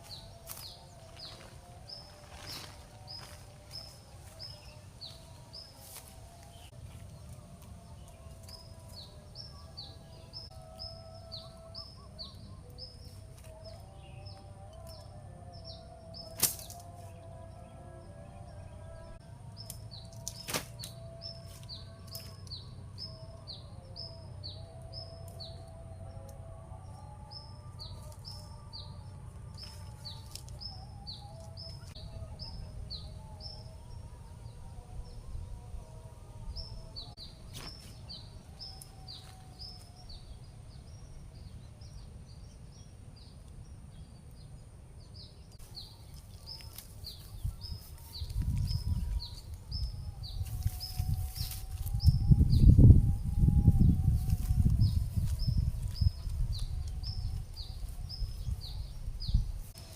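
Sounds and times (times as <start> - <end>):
faint wavering low tone: 0.0 - 43.3
bird chirping: 0.0 - 59.9
steady low rumble: 20.9 - 59.9.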